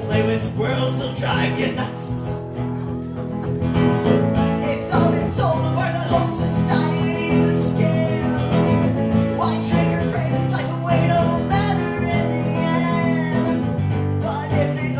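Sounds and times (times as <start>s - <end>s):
man singing: 0.0s - 2.5s, 4.1s - 14.9s
acoustic guitar strumming: 0.0s - 14.9s.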